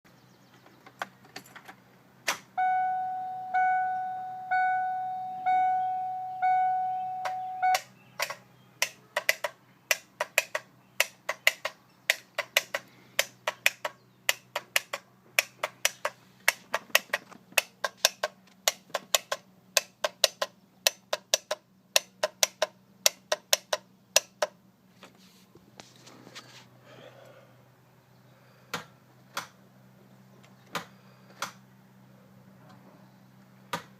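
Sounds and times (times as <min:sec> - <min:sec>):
dashboard warning chime: 0:02.6 - 0:07.9.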